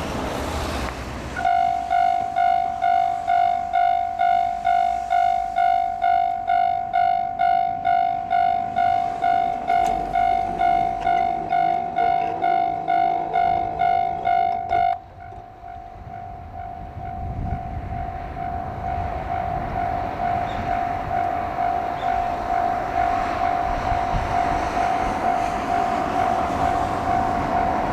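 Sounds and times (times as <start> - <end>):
level crossing bell ringing: 1.4 - 27.9
wind noise on microphone: 13.4 - 27.9.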